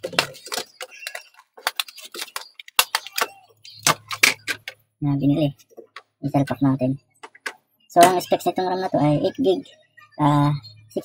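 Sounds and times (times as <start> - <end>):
plastic packaging crackling: 0.0 - 4.8
plastic snaps: 0.0 - 4.8.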